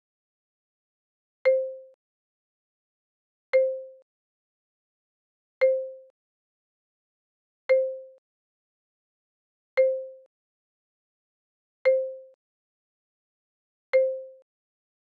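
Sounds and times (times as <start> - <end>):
click with soft tone: 1.5 - 2.0, 3.6 - 4.1, 5.6 - 6.2, 7.7 - 8.2, 9.8 - 10.3, 11.8 - 12.4, 13.9 - 14.5.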